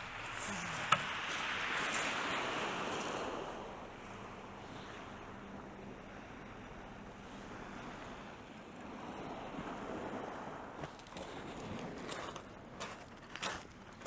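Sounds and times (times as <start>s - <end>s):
sea surf washing on shore: 0.0s - 5.5s.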